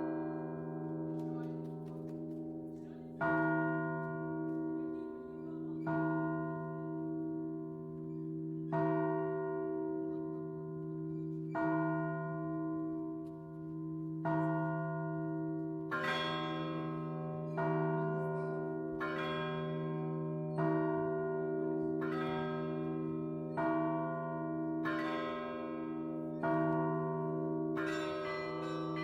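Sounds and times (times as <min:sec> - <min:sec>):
small bright bells: 0:26.4 - 0:29.0.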